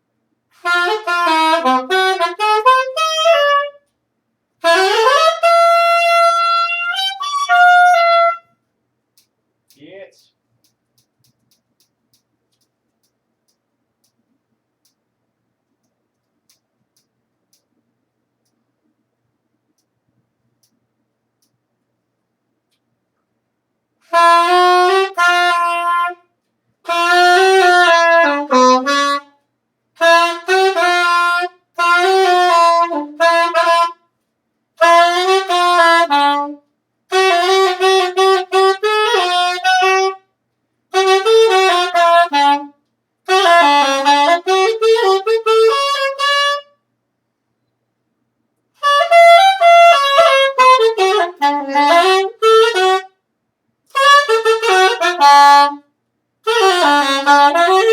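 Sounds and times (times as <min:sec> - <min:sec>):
solo wind instrument melody: 0:00.6 - 0:03.8, 0:04.6 - 0:08.5, 0:24.1 - 0:26.2, 0:26.9 - 0:29.3, 0:30.0 - 0:34.0, 0:34.8 - 0:40.2, 0:40.9 - 0:42.7, 0:43.3 - 0:46.8, 0:48.8 - 0:53.1, 0:53.9 - 0:55.8, 0:56.5 - 0:57.9.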